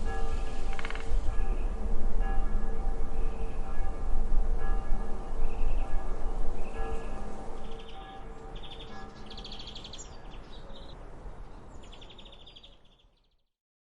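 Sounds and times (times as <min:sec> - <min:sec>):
church bell ringing: 0:00.0 - 0:10.7
birds chirping in rapid trills: 0:06.6 - 0:11.0.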